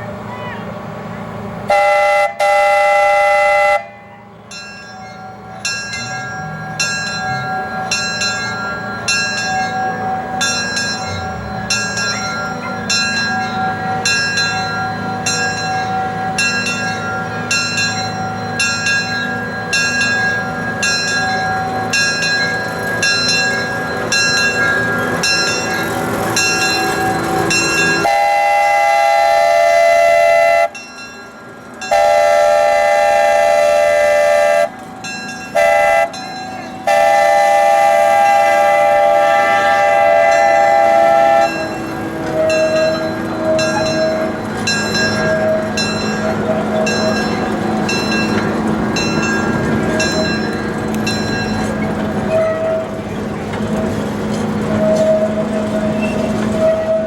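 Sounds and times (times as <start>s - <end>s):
steam locomotive chuffing: 0.0s - 57.0s
steam whistle blast: 1.7s - 4.0s, 28.0s - 30.8s, 31.9s - 34.7s, 35.6s - 36.2s, 36.8s - 41.7s, 56.6s - 57.0s
bell ringing: 4.5s - 28.1s, 41.5s - 51.9s.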